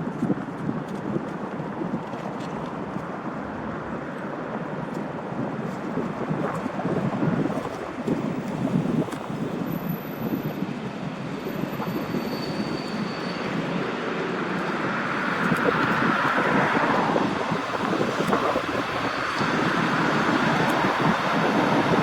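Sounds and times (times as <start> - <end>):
train wheels squealing and grinding: 11.4 - 13.9.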